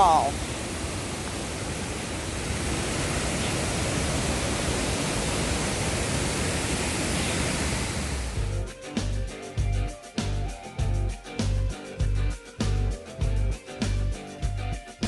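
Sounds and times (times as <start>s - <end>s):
waterfall rushing: 0.0s - 8.5s.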